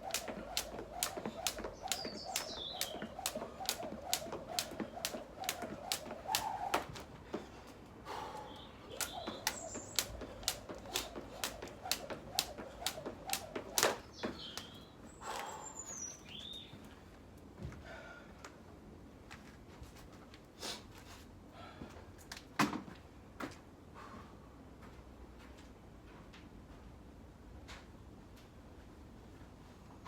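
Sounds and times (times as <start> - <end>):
skipping rope slapping the ground: 0.0 - 7.5, 8.9 - 14.8
birds chirping: 0.1 - 6.6, 8.1 - 16.8.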